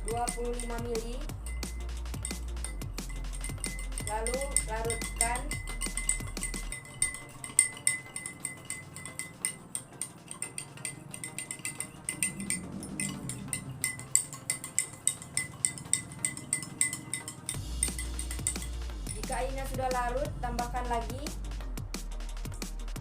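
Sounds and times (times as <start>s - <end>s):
spoon clinking against glass: 0.0s - 19.3s.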